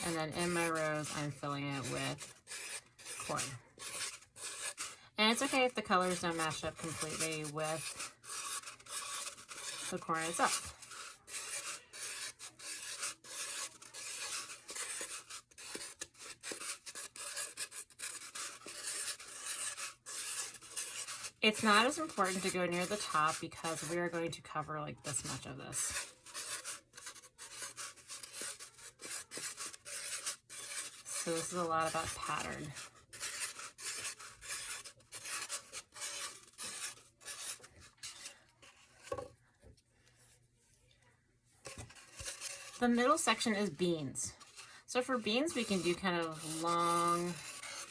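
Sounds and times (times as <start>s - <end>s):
marker tip scratching on tube: 0.0s - 24.4s, 25.1s - 39.3s, 41.7s - 47.9s.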